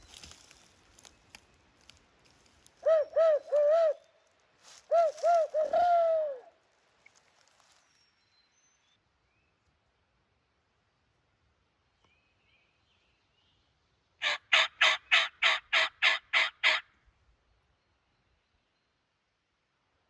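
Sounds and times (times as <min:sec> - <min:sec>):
owl hooting: 0:02.8 - 0:04.1, 0:04.7 - 0:06.5, 0:14.2 - 0:16.8.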